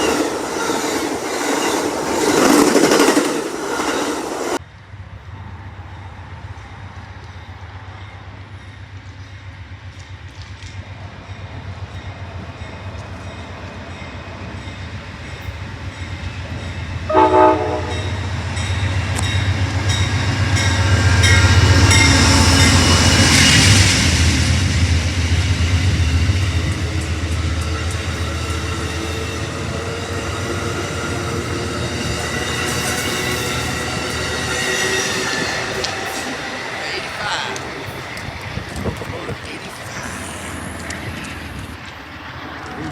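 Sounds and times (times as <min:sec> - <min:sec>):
locomotive rumble: 0:00.0 - 0:42.9
train horn blast: 0:17.1 - 0:18.3.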